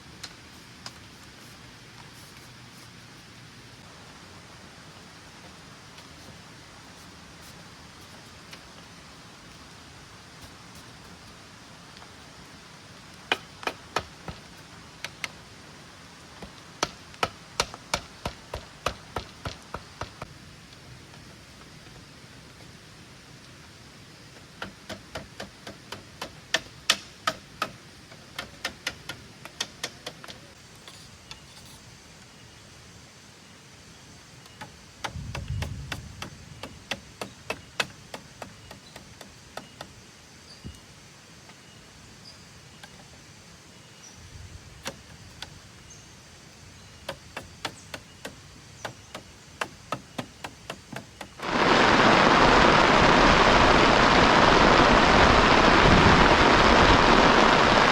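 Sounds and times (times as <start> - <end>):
hand tool striking bamboo: 13.3 - 15.2, 24.6 - 27.8
heavy rain: 51.4 - 57.9.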